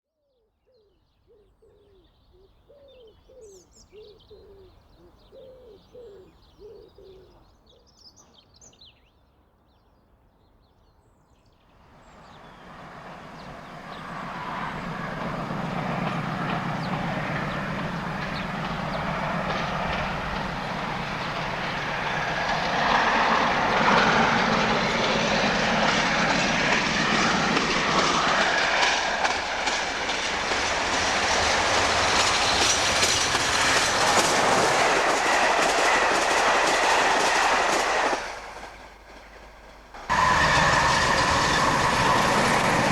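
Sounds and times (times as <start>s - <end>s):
birds chirping: 12.0s - 39.4s
locomotive engine: 12.0s - 42.9s
train wheels clattering on rails: 12.1s - 42.9s.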